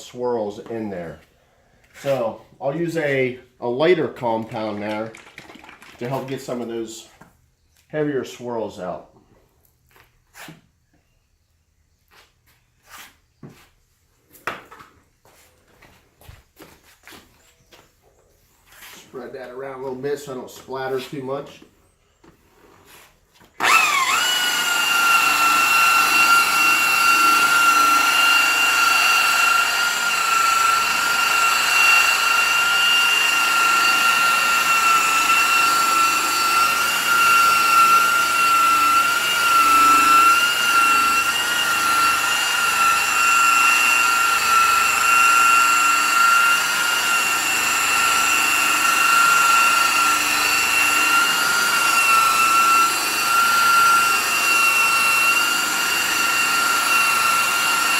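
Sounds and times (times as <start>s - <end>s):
electric buffer whining: 23.6s - 57.9s.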